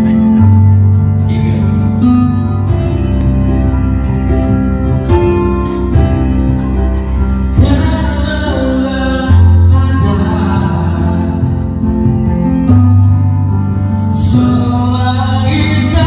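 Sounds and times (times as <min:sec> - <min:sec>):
bass line: 0:00.0 - 0:16.0
organ chords on keyboard: 0:00.0 - 0:16.0.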